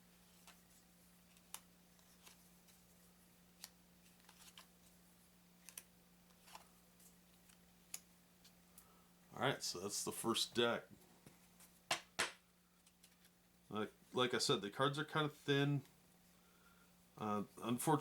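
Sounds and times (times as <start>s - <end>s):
playing cards clicking: 3.6s - 4.7s, 5.6s - 6.7s.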